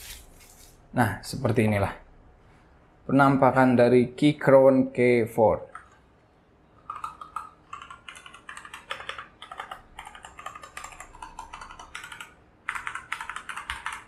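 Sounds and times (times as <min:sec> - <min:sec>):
mechanical keyboard typing: 0:06.8 - 0:14.0.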